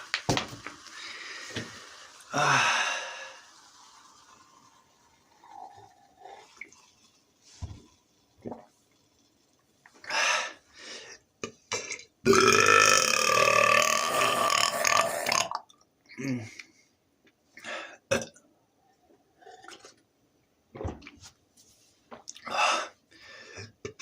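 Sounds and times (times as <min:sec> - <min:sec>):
man burping: 0:11.4 - 0:16.6, 0:18.1 - 0:18.4.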